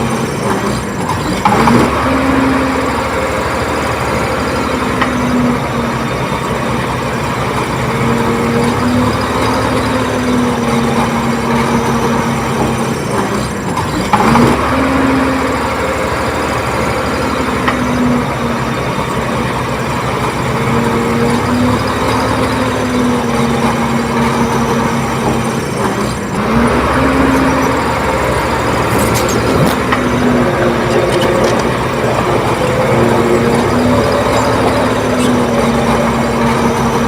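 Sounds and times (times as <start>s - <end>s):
bulldozer diesel engine running: 0.0s - 37.0s.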